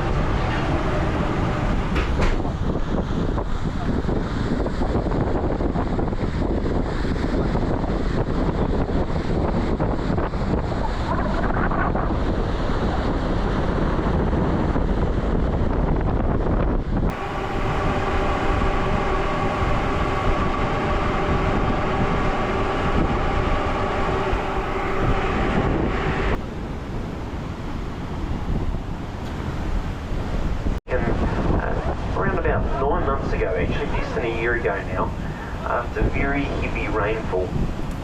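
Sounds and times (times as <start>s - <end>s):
machinery drone with held tones: 0.0s - 2.7s, 17.1s - 26.4s
ship engine rumble: 0.0s - 38.0s
wind buffeting microphone: 0.0s - 38.0s.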